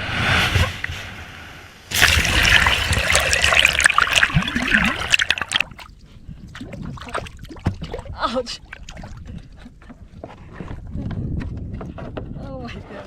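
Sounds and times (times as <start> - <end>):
crackling water drips: 1.9 - 10.0
water splashing and trickling: 1.9 - 10.0.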